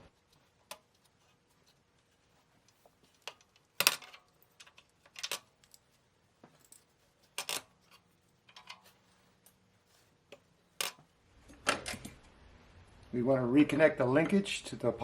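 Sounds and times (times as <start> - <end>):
clicks and clatters of hard parts: 3.1 - 5.8.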